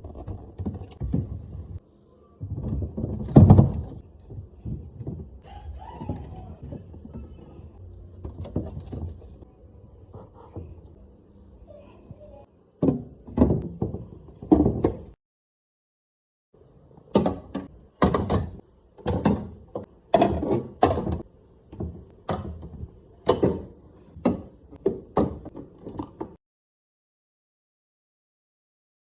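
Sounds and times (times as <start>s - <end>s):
fridge door handled: 2.4s - 9.4s
items set onto fridge shelves: 2.4s - 9.5s, 12.8s - 15.2s, 17.1s - 26.4s.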